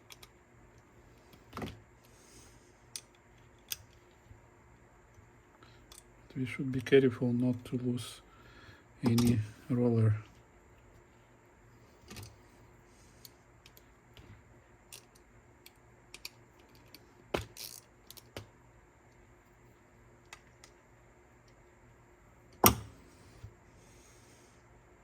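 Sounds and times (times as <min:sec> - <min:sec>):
light clicks and taps of parts: 0:00.0 - 0:02.2, 0:05.1 - 0:06.1, 0:13.2 - 0:18.5.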